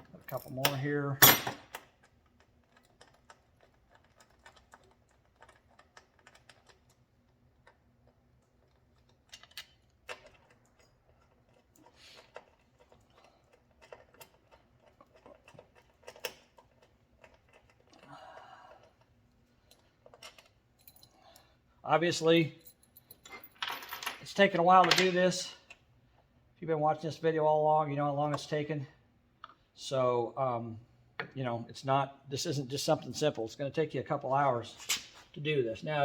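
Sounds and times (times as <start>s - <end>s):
bolts handled: 0.0s - 18.0s.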